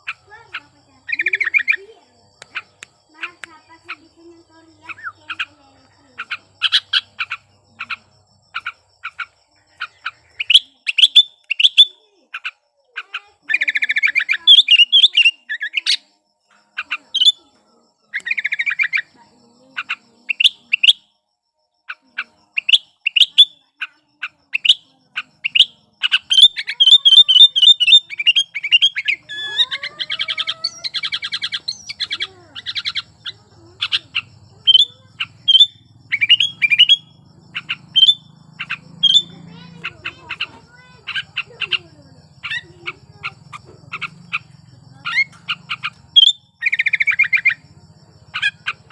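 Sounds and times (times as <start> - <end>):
bulbul chirping and warbling: 0.0 - 4.2, 4.8 - 17.5, 18.1 - 21.1, 21.9 - 48.9.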